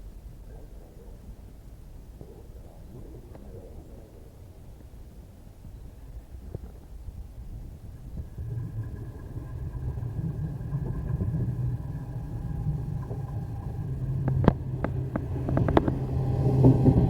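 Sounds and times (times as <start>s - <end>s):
faint whine tones: 0.0s - 17.0s
electric train rumble: 7.0s - 17.0s.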